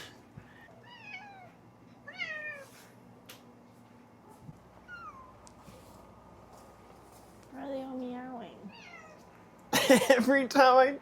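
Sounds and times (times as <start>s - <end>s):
cat meowing: 8.7s - 9.2s.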